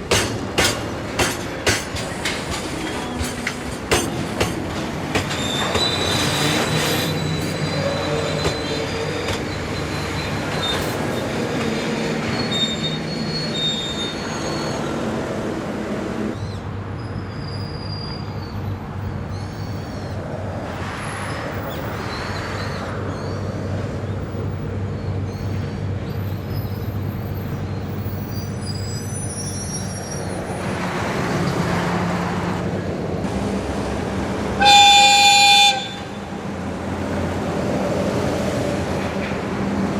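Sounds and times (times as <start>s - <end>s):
wheels squealing on rails: 0.0s - 20.2s, 24.2s - 31.6s
locomotive engine drone: 30.3s - 39.9s.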